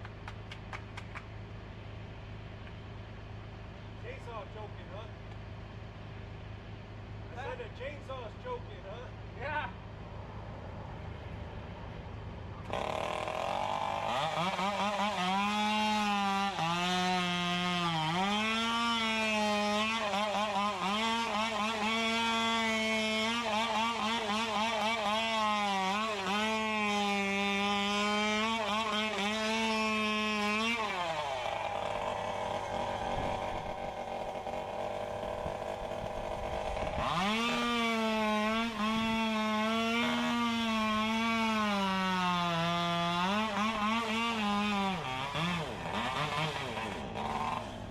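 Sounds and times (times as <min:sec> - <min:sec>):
chainsaw running at high revs: 0:12.7 - 0:47.9.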